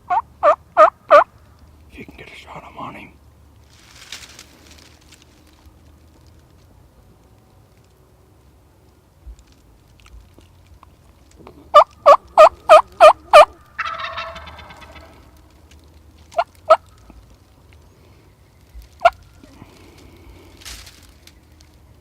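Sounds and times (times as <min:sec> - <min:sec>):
turkey gobbling: 0:00.1 - 0:01.3, 0:11.7 - 0:15.5, 0:16.3 - 0:16.9
turkey yelps: 0:00.1 - 0:01.3, 0:11.7 - 0:15.4.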